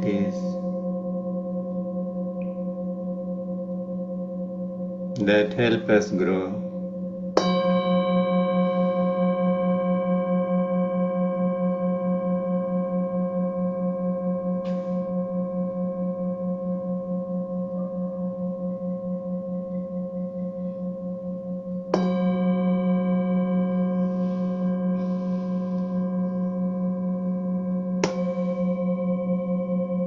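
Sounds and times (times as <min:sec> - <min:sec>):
singing bowl ringing: 0:00.0 - 0:30.0
singing bowl struck: 0:06.2 - 0:30.0.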